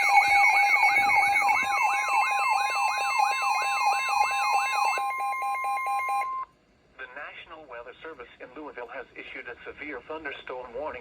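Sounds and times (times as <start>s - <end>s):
fast yelping siren: 0.0s - 6.4s
steady high-pitched siren tones: 0.0s - 6.4s
warbling siren tone: 0.0s - 6.4s.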